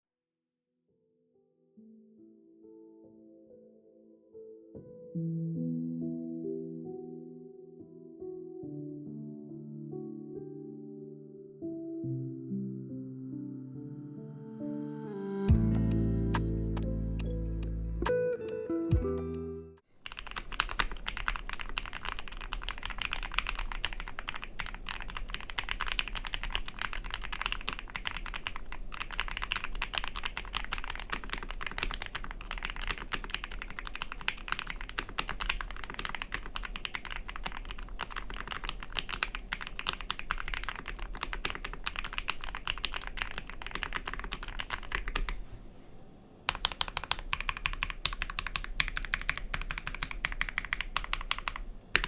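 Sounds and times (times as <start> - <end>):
mechanical keyboard typing: 20.0 - 45.5, 46.5 - 52.0.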